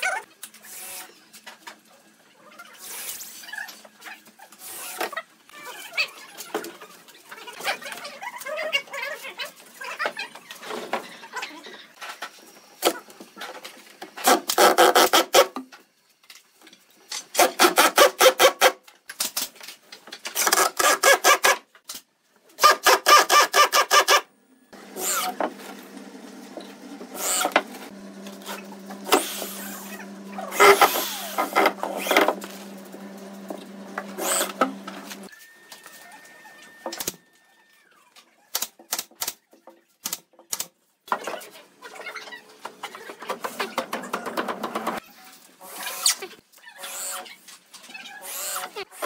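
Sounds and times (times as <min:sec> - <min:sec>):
power tool motor whirring: 0:24.8 - 0:25.9, 0:27.1 - 0:35.3
power tool rattling: 0:27.1 - 0:35.3.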